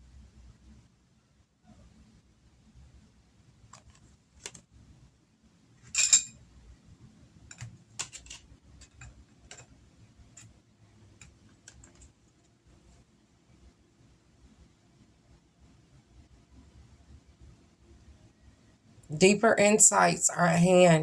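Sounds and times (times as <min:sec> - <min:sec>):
cards clicking and tapping: 0:03.7 - 0:04.6, 0:07.5 - 0:09.7.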